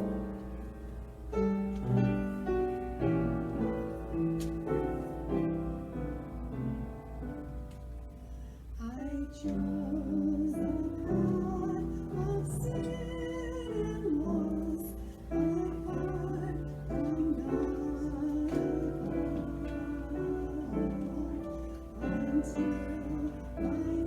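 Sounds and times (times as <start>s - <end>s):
piano accompaniment: 0.0s - 24.0s
person singing with vibrato: 8.6s - 24.0s.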